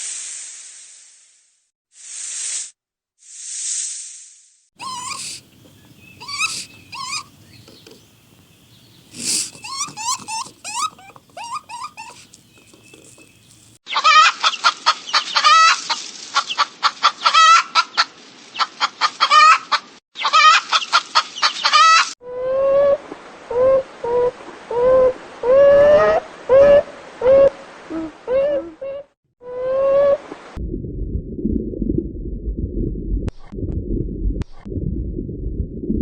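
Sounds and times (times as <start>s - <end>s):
bird-like animal calls: 4.8s - 15.8s.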